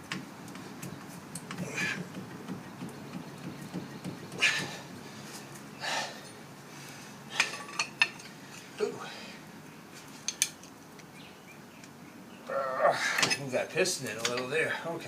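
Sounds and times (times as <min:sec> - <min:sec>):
metal clinks and scrapes: 0:07.4 - 0:08.7.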